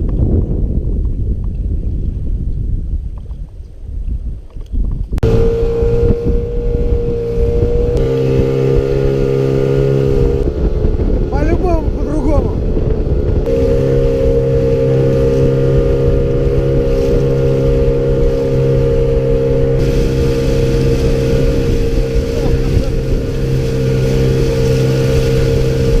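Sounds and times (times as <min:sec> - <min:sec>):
wind and water rushing: 0:00.0 - 0:26.0
outboard motor running: 0:05.2 - 0:26.0.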